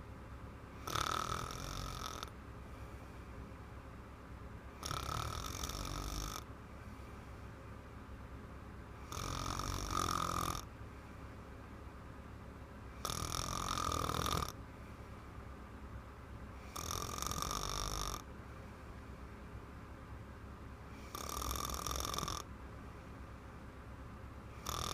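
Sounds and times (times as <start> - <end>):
woman snoring: 0.8 - 2.3, 4.8 - 6.5, 9.0 - 10.7, 13.0 - 14.6, 16.6 - 18.2, 21.0 - 22.5, 24.6 - 24.9.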